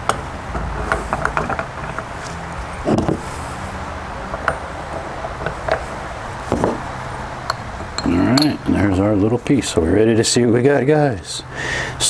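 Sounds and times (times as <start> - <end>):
metal ingots knocking and clinking: 0.0 - 8.9
steady low hum: 0.0 - 11.9.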